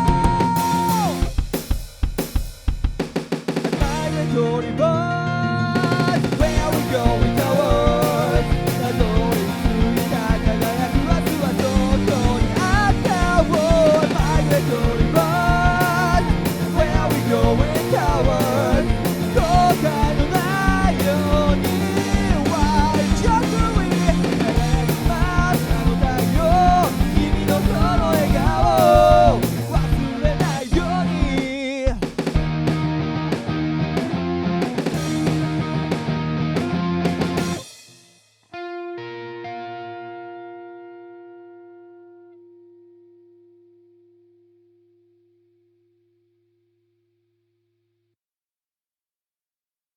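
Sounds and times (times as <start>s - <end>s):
drums keeping steady beat: 0.0s - 4.2s, 5.8s - 38.1s
bass: 0.0s - 37.7s.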